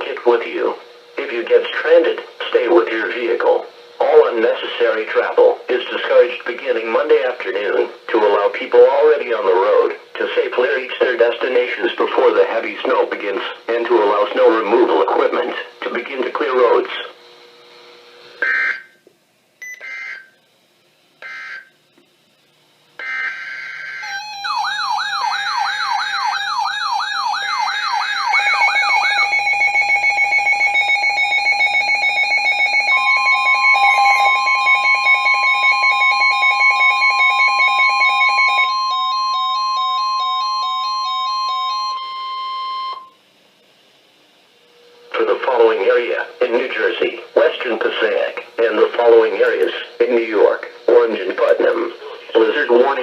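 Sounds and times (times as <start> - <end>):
long steady warning tone: 0.0 - 53.0
fast warbling siren: 23.0 - 43.0
buzzy data bursts: 27.0 - 38.7
on-off beeping: 27.5 - 43.2
higher warble: 33.6 - 34.6.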